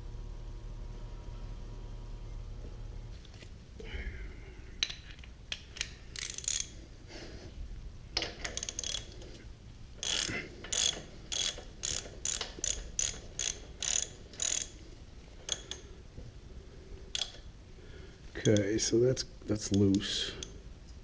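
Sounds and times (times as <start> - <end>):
ratchet wrench clicking: 4.8 - 6.8, 8.4 - 9.2, 10.0 - 14.8, 15.4 - 15.8, 17.1 - 17.4, 18.4 - 18.9.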